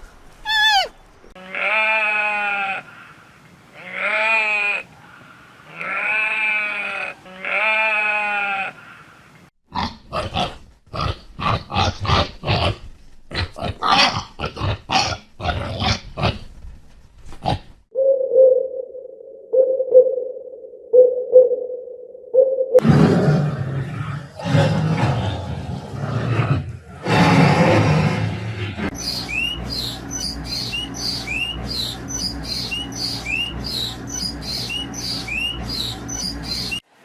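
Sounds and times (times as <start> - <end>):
farm animal bleating: 1.4 - 2.9, 3.8 - 4.9, 5.7 - 8.9
harsh grunting calls: 22.8 - 36.8.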